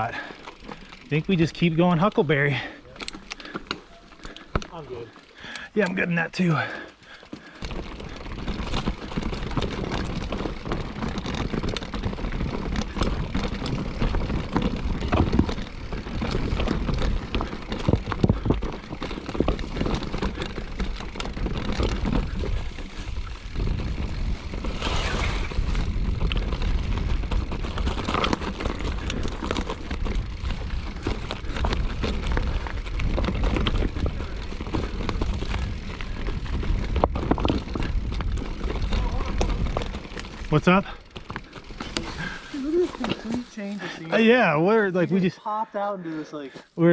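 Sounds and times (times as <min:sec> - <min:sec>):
bike rattling and knocking: 0:00.0 - 0:44.7
wind rumble on microphone: 0:08.3 - 0:40.4.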